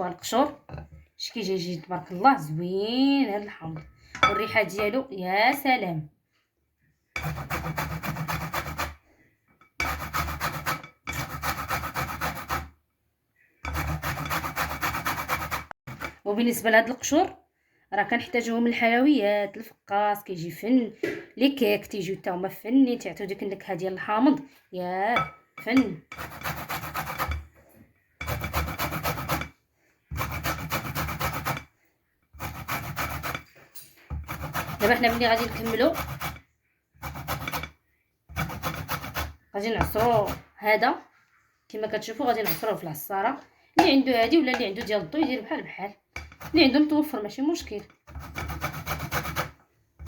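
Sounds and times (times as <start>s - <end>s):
lemon rasping on a grater: 7.2s - 9.0s, 9.8s - 12.7s, 13.7s - 16.2s, 26.1s - 27.4s, 28.2s - 29.5s, 30.1s - 31.7s, 32.4s - 36.4s, 37.0s - 37.7s, 38.3s - 40.4s, 46.3s - 46.9s, 47.7s - 49.6s.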